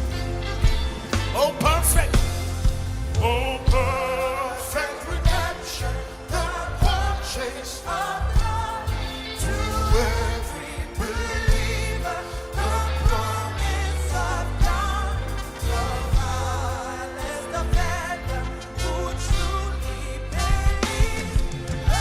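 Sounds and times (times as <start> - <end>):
drum hits: 0.0 - 4.2
bass guitar: 0.0 - 22.0
person singing gospel: 0.0 - 22.0.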